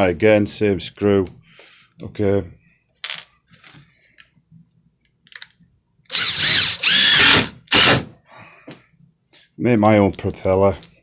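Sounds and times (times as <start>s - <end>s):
impact driver driving screw: 6.1s - 8.1s.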